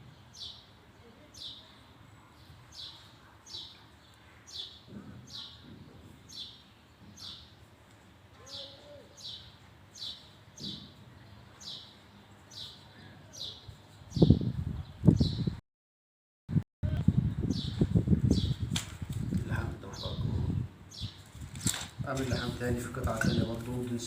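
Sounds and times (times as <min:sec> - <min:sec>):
small bird chirping: 0:06.3 - 0:07.6.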